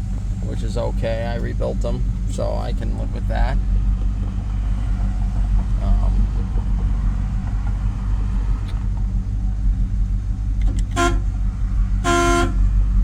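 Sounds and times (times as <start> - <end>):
car engine idling: 0.0 - 13.0
car horn toot: 10.8 - 11.4, 12.0 - 12.7.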